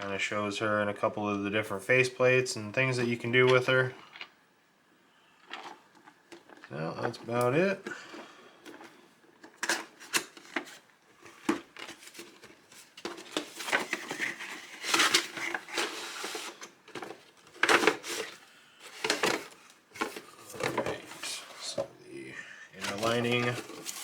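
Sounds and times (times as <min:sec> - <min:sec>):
plastic tray handled: 0:08.7 - 0:21.9, 0:22.8 - 0:24.0
cardboard box being opened: 0:11.4 - 0:21.3, 0:22.8 - 0:24.0.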